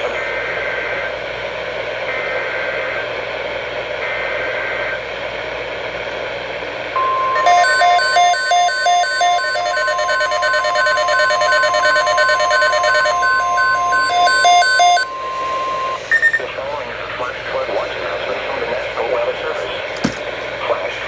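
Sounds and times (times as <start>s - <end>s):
steady weather alarm tone: 7.0s - 16.5s
pulsing electronic beep: 7.4s - 16.4s
two-tone digital data bursts: 9.2s - 15.0s.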